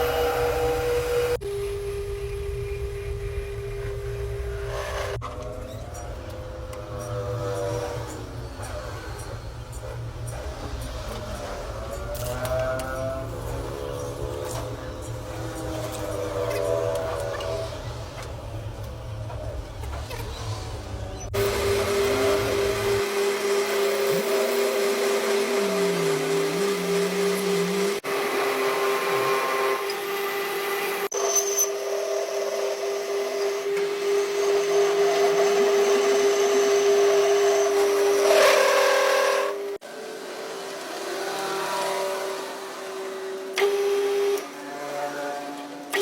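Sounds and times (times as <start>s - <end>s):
electric power tool running: 21.4s - 31.1s.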